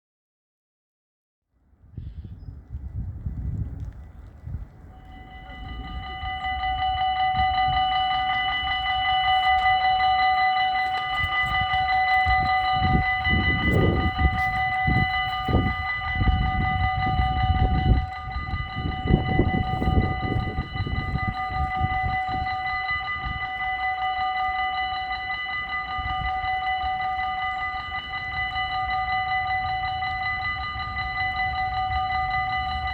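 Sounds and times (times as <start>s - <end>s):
level crossing warning bells: 1.7s - 32.9s
uneven low rumble: 1.8s - 9.7s.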